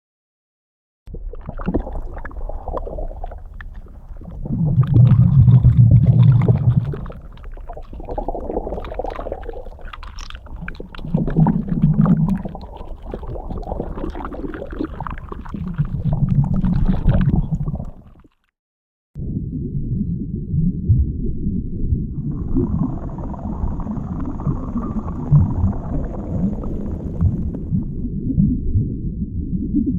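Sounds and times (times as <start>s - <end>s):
low underwater rumble: 1.1s - 18.2s, 19.2s - 29.9s
crackles and clicks: 1.1s - 18.5s, 22.2s - 28.9s
low gurgling surges: 22.1s - 28.1s.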